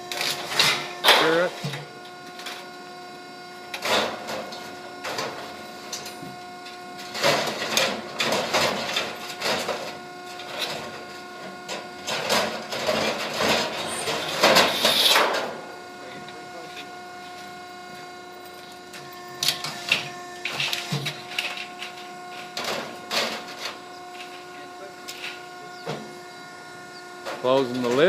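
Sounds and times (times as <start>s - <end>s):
hydraulic power unit humming: 0.0s - 28.0s
metal scrap clattering and crashing: 7.0s - 9.9s, 11.7s - 15.6s.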